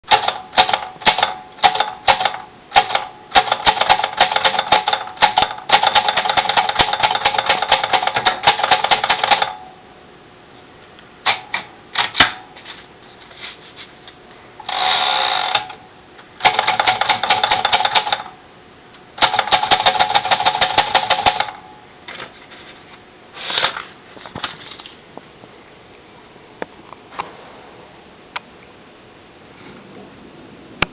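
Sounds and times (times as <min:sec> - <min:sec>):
typewriter keys clattering: 0:00.1 - 0:09.6, 0:16.4 - 0:18.2, 0:19.2 - 0:21.6.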